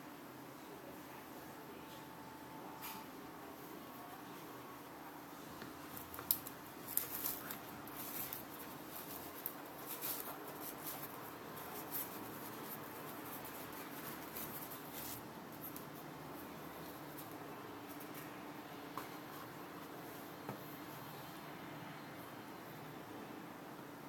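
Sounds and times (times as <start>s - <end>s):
faint steady hum: 0.0s - 24.0s
soft clicks and rustles: 5.4s - 20.7s.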